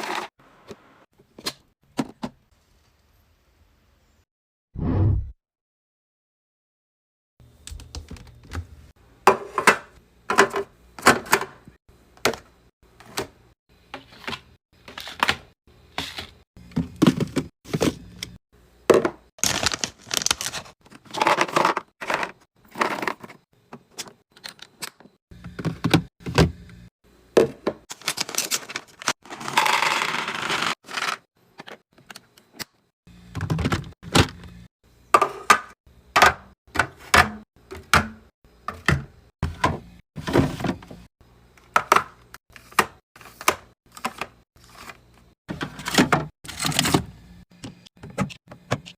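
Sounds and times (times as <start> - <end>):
food packaging being handled: 19.4 - 23.3, 27.9 - 31.1.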